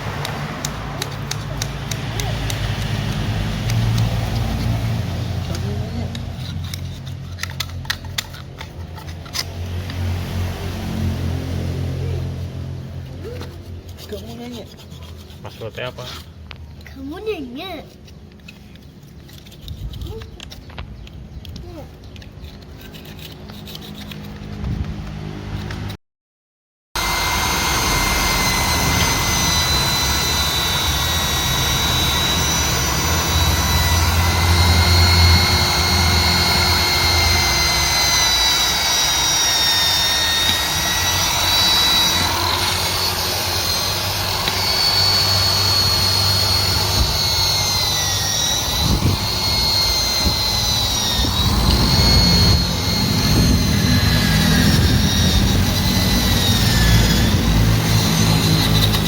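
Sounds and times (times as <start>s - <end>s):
wire brush drill scouring metal: 0.0s - 10.0s, 21.4s - 24.6s, 27.0s - 59.0s.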